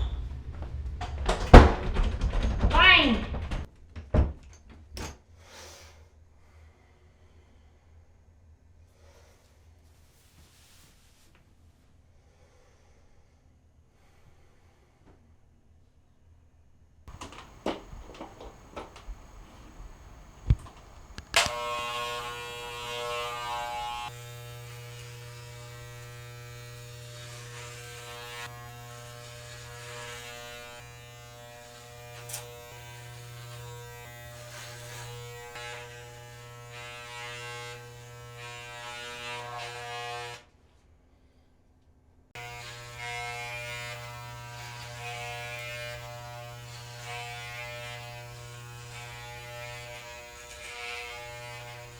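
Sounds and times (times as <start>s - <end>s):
small electric motor buzzing: 17.1s - 40.5s, 42.4s - 51.9s.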